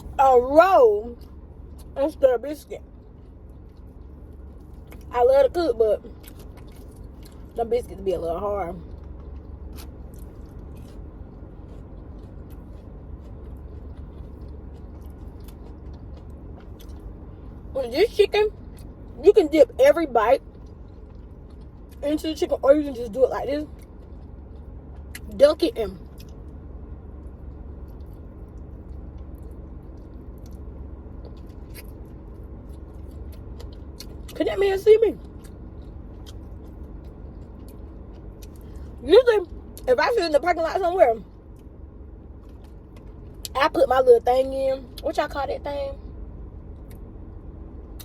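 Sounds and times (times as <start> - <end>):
low rumble inside car: 0.0 - 48.0
person chewing: 2.8 - 5.1, 6.0 - 7.6, 8.8 - 17.7, 20.4 - 22.0, 23.7 - 25.4, 26.0 - 26.6, 27.2 - 34.4, 35.2 - 39.9.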